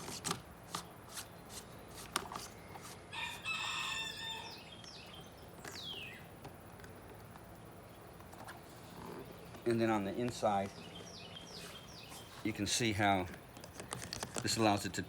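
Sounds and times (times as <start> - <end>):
rooster crowing: 3.1 - 4.6.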